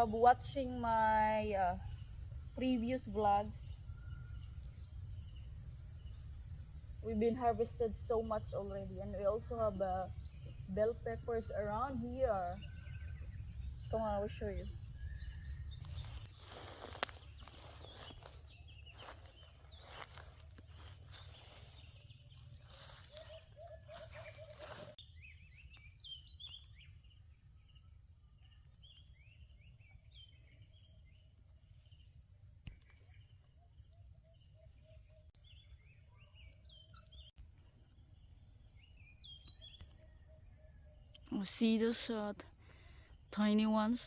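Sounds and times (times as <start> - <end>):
insect chorus drone: 0.0 - 44.0
footsteps through vegetation: 15.4 - 25.0.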